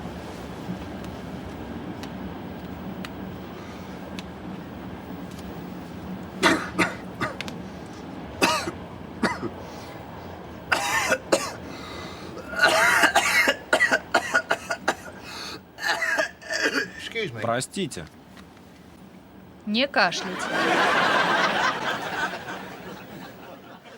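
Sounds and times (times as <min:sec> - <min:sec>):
person coughing: 0:06.4 - 0:07.4, 0:08.4 - 0:09.6, 0:10.7 - 0:11.6, 0:12.4 - 0:15.2, 0:15.8 - 0:17.0.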